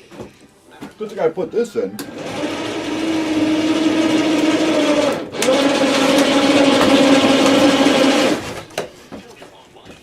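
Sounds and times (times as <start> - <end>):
power tool motor running: 2.0 - 8.6.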